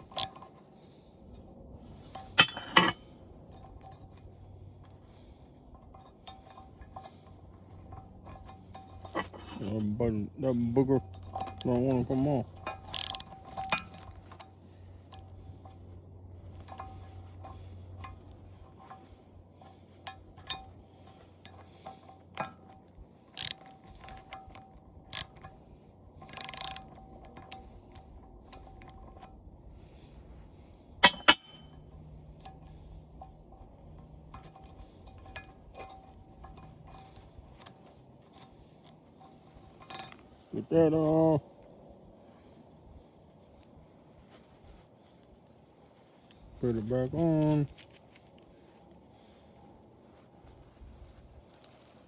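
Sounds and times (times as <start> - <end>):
socket wrench ratchet clicking: 0.0 - 0.4, 11.1 - 14.4, 23.4 - 25.5, 26.2 - 28.0, 31.0 - 31.7, 47.1 - 48.6
metal clicks and clinks: 0.0 - 0.6, 1.9 - 5.0, 5.8 - 15.8, 16.5 - 25.6, 26.2 - 29.3, 31.0 - 39.0, 39.7 - 40.6, 46.2 - 48.8.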